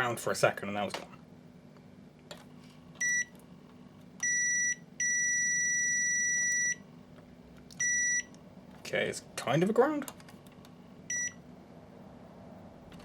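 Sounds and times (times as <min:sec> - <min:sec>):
multimeter continuity beeps: 0:03.0 - 0:03.3, 0:04.2 - 0:06.9, 0:07.8 - 0:08.4, 0:11.1 - 0:11.4.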